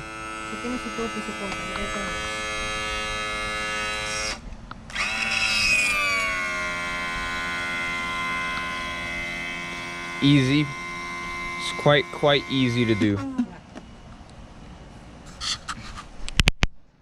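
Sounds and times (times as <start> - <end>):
electric pump motor whining: 0.0 - 13.2.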